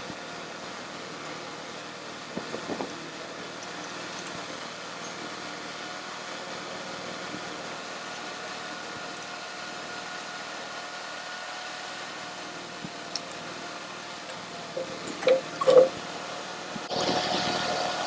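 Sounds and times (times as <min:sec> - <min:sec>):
background hum: 0:00.0 - 0:18.0
faint held tone: 0:14.8 - 0:16.0.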